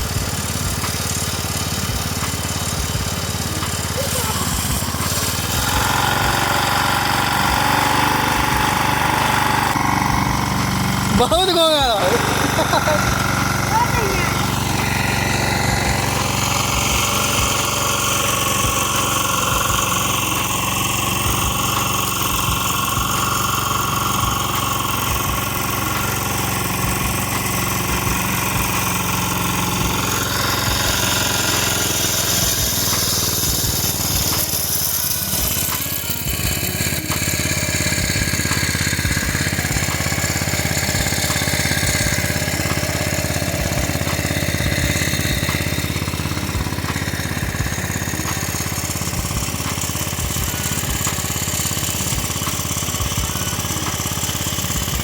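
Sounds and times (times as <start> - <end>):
water pump engine running: 0.0 - 55.0.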